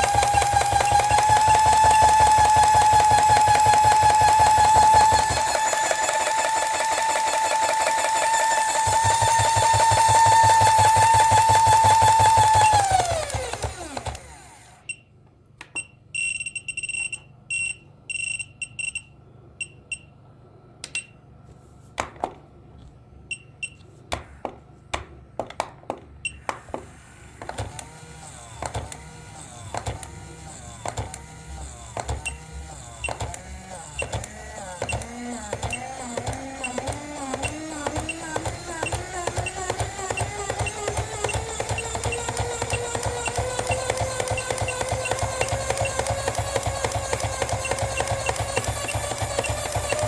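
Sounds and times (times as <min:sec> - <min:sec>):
electronic alarm beeping: 0:15.7 - 0:20.1, 0:23.3 - 0:23.8, 0:26.2 - 0:26.5, 0:32.2 - 0:33.3, 0:37.4 - 0:46.2, 0:47.2 - 0:50.0
sharp clicks: 0:33.0 - 0:50.0.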